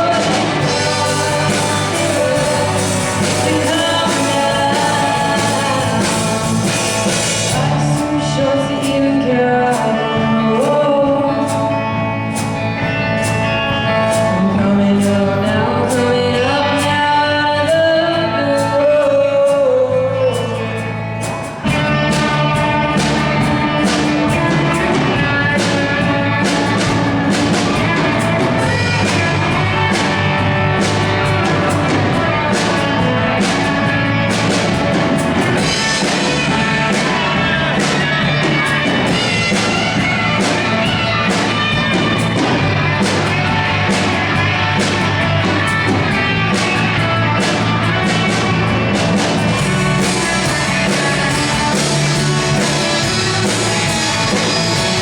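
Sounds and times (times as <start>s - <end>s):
steady drum beat: 0.0s - 8.4s, 20.8s - 55.0s
lead singer singing: 0.0s - 12.9s, 13.8s - 55.0s
live rock band playing: 0.0s - 55.0s.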